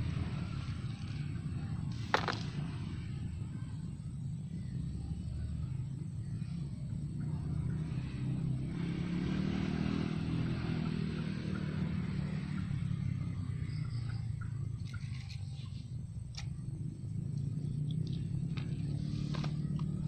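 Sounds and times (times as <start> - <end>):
motor engine rumbling past: 0.0 - 20.0.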